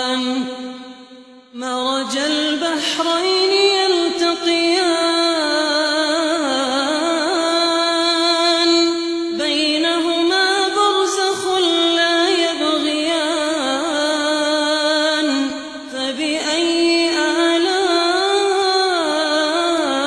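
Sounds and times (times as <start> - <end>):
person reciting melodically: 0.0 - 20.0.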